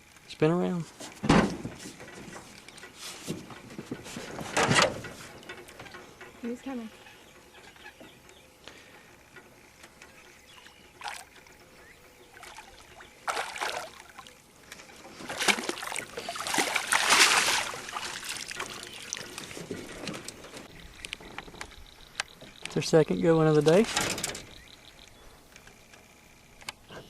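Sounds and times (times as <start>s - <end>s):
fish splashing in water: 12.3s - 14.4s, 15.1s - 19.6s.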